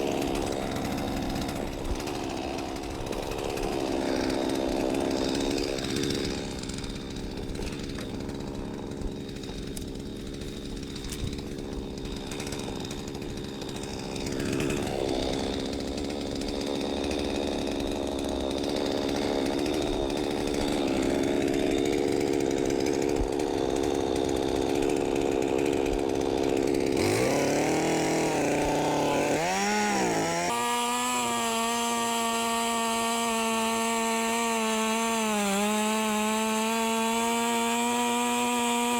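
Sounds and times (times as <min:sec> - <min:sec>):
chainsaw cutting a tree trunk: 0:00.0 - 0:38.9.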